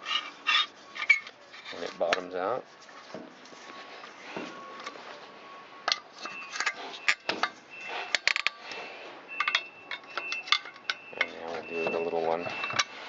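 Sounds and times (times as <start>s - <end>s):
metal tools clinking: 9.3s - 13.0s.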